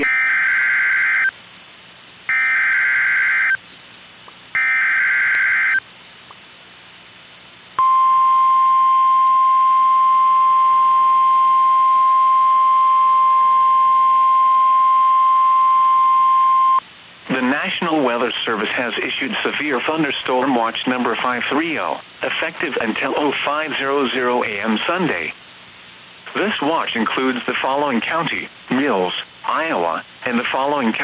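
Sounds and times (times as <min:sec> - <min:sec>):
buzzy digital data bursts: 0:00.0 - 0:01.3
steady warning alarm tone: 0:00.0 - 0:01.3, 0:02.3 - 0:03.8, 0:04.6 - 0:05.8.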